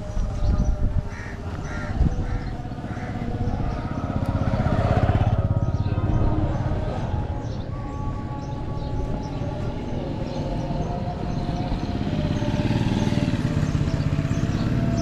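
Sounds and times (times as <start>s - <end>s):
motor vehicle passing: 1.1s - 8.9s, 9.5s - 15.0s.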